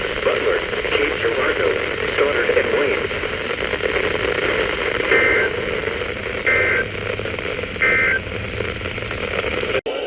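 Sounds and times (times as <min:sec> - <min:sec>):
radio static and hum: 0:00.0 - 0:10.0
two-tone digital data bursts: 0:04.3 - 0:07.0, 0:07.8 - 0:08.3.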